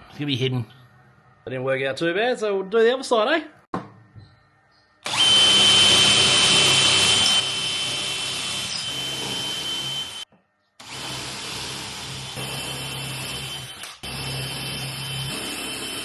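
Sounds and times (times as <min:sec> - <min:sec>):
power drill whining: 0:05.0 - 0:16.0.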